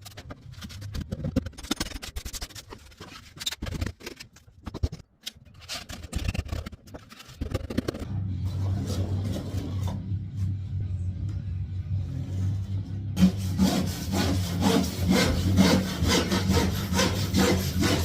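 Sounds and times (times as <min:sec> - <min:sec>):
scraping and knocking: 0:00.0 - 0:09.9
low steady hum: 0:07.8 - 0:13.6.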